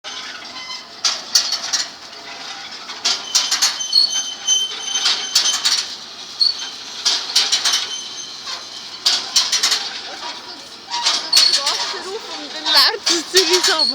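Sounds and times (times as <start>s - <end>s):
metal parts scraping and squeaking: 0.0s - 13.9s.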